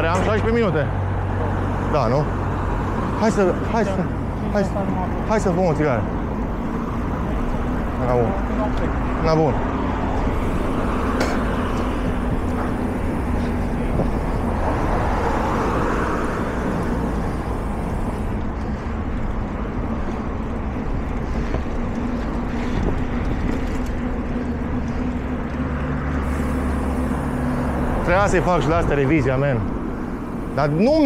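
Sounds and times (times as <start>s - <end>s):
steady outdoor rumble: 0.0s - 31.0s.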